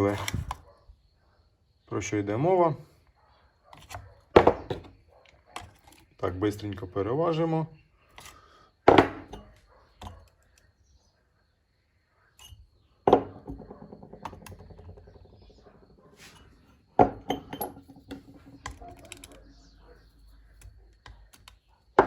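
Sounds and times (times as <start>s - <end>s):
metal parts clinking: 16.2s - 19.7s.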